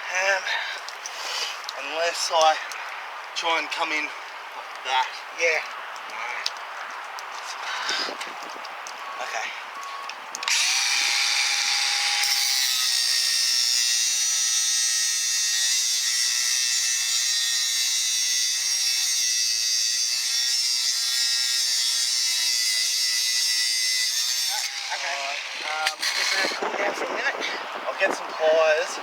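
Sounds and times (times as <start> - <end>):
angle grinder cutting metal: 10.5 - 26.7.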